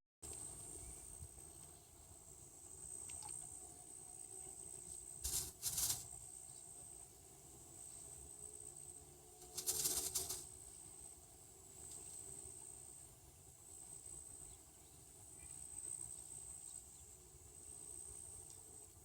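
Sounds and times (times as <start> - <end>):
high insect drone: 0.3 - 19.0
crackling rattling burst: 5.2 - 6.1, 9.5 - 10.5.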